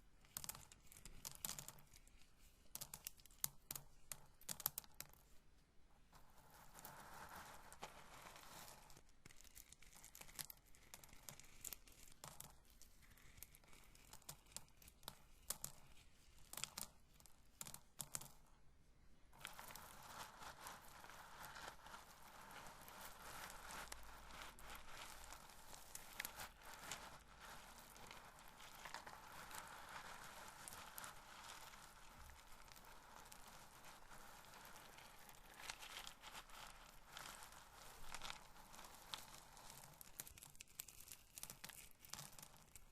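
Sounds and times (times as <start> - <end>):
kernels rubbing with dry crackling: 19.4 - 42.8
corn kernels clicking: 22.5 - 42.8.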